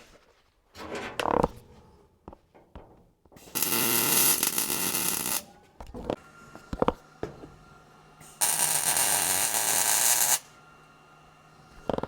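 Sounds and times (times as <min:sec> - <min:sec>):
welding arc crackling hiss: 0:03.4 - 0:05.5, 0:07.8 - 0:10.6.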